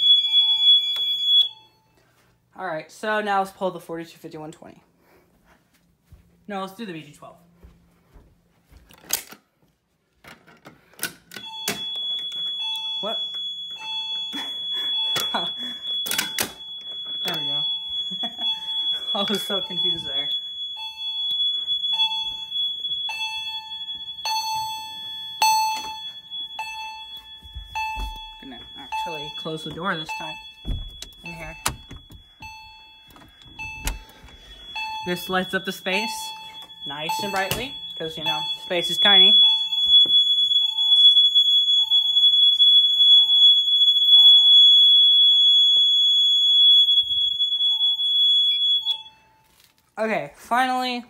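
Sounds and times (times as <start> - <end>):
fire alarm chime: 0.0 - 2.3, 10.8 - 49.7
steady high-pitched alarm tone: 0.0 - 2.3, 11.3 - 49.6.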